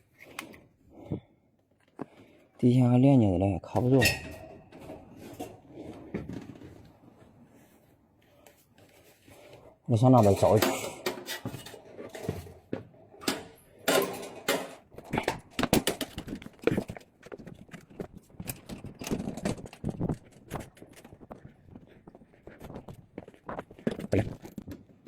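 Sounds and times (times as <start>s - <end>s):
knocks and clatter of handled objects: 3.6s - 7.4s, 8.4s - 25.0s
footsteps on a hard floor: 19.8s - 25.0s.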